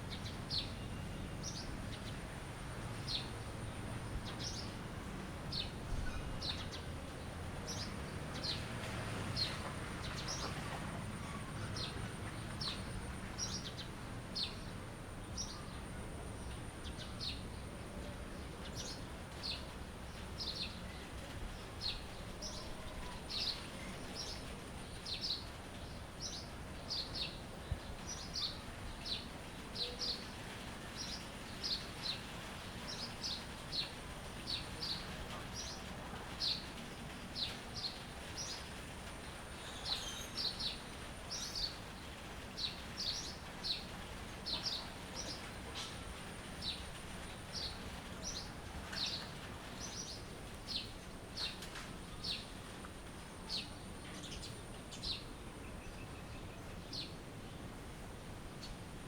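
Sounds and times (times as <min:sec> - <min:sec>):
songbirds chirping: 0:00.0 - 0:59.0
steady background hiss: 0:00.0 - 0:59.0.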